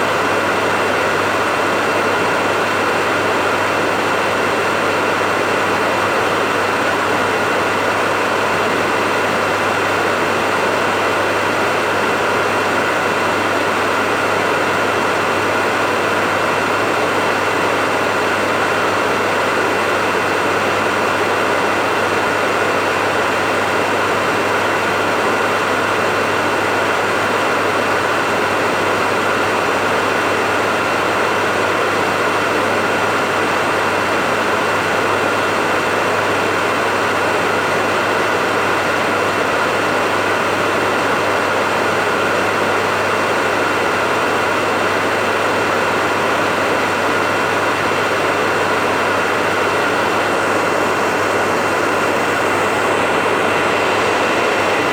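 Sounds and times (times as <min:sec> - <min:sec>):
hair dryer running: 0:41.8 - 0:54.9.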